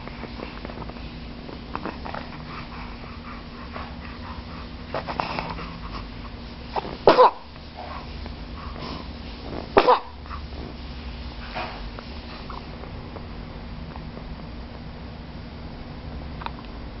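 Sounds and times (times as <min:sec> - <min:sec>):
baby sneezing: 0:07.0 - 0:07.5, 0:09.8 - 0:10.2.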